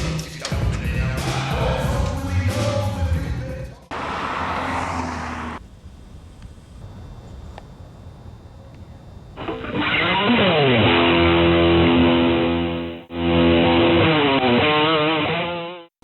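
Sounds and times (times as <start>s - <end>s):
electric guitar sliding chords: 9.4s - 15.9s.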